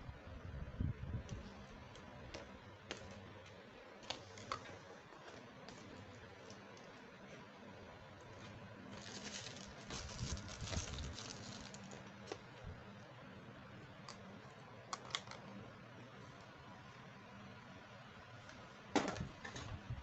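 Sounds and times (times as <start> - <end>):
packaging rustling: 8.9 - 12.4.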